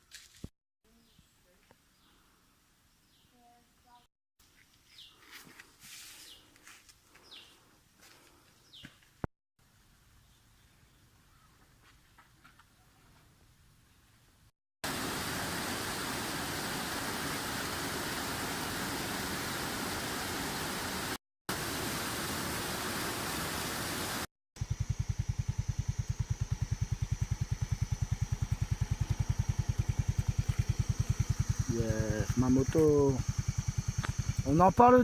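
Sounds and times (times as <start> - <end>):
motorbike engine idling: 24.6 - 35.0.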